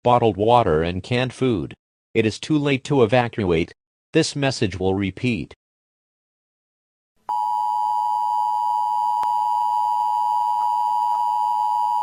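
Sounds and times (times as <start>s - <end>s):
loud steady electronic tone: 7.3s - 12.0s.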